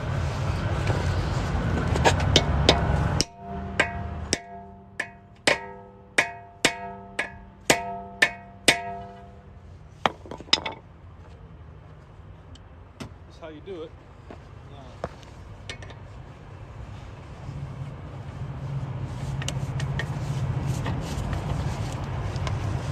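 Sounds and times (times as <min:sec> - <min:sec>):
low rumble of road noise: 0:00.0 - 0:22.9
hammer striking metal socket: 0:02.2 - 0:09.5.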